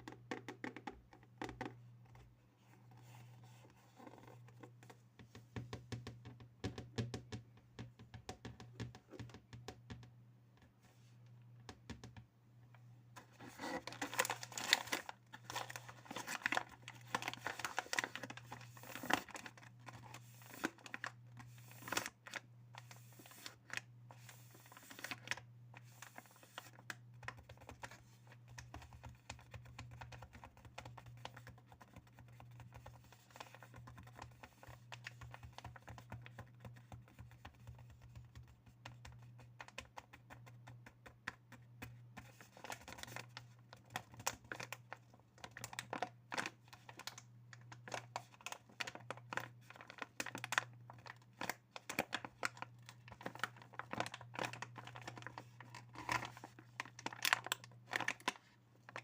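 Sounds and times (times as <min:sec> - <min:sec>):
light tapping and clicking on objects: 0:00.0 - 0:02.3, 0:04.0 - 0:13.3, 0:26.6 - 0:59.0.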